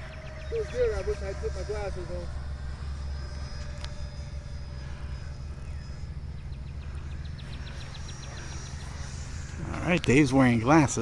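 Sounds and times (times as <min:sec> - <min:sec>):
steady low rumble: 0:00.0 - 0:11.0.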